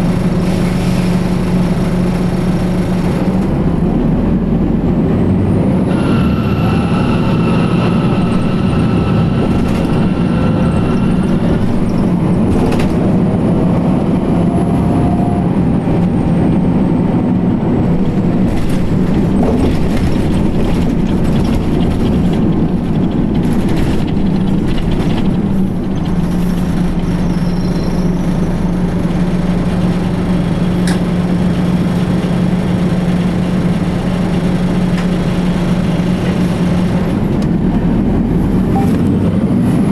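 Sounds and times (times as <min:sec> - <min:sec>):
diesel bus engine running: 0:00.0 - 0:39.9
thin high whine: 0:05.9 - 0:12.2
knocks and rattles: 0:18.0 - 0:27.2.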